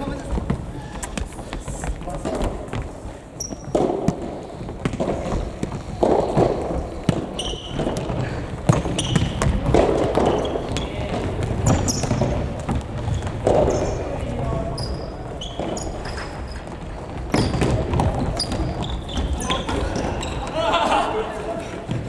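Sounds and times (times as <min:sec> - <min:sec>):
shoe squeaks: 0:03.4 - 0:03.8, 0:06.2 - 0:20.6
ball thudding on gym floor: 0:03.6 - 0:14.0
players calling out: 0:18.6 - 0:22.0.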